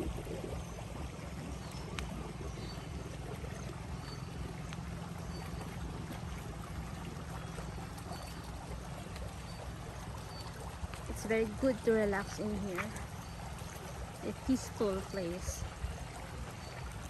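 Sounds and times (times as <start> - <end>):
low rumble: 0.0 - 8.6
flowing water: 0.0 - 17.0.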